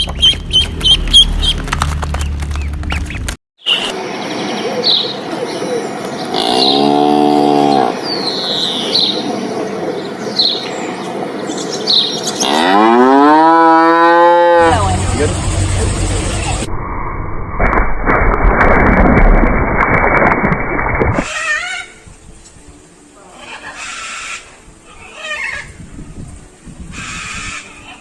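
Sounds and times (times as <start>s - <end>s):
small birds chirping: 0.0s - 12.7s
cow mooing: 6.3s - 8.0s, 12.4s - 15.0s.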